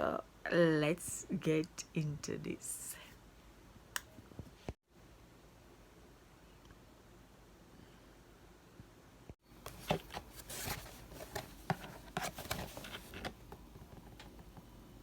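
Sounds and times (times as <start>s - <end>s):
packaging rustling and clicking: 9.6s - 14.4s.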